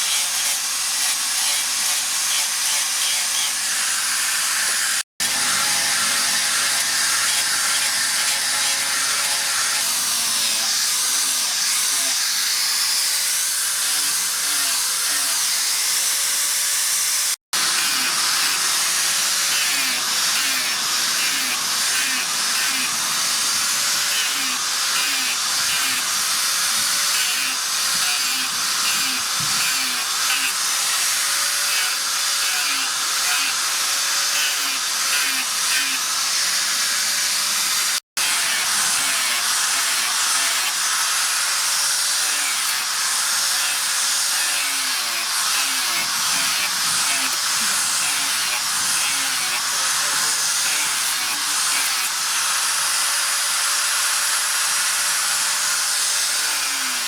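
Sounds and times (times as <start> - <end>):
power grinder grinding steel: 0.0 - 57.0.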